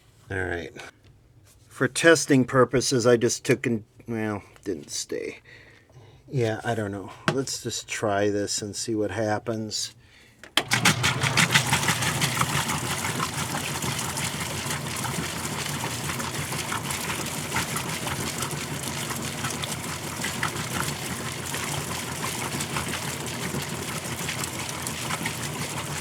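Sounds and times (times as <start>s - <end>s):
washing machine motor hum: 10.6s - 26.0s
water gushing and splashing: 10.7s - 26.0s.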